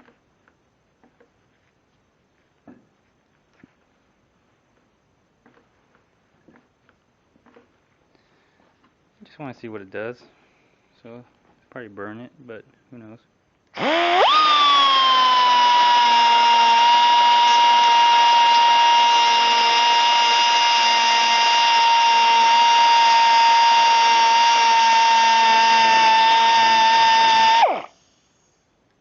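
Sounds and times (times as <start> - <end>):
air die grinder whining: 13.8 - 28.0.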